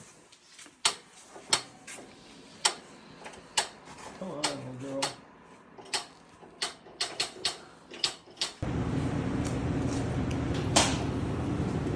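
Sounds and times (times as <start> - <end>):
sharp clicks and knocks: 5.8 - 8.6
steady low hum: 8.6 - 11.9.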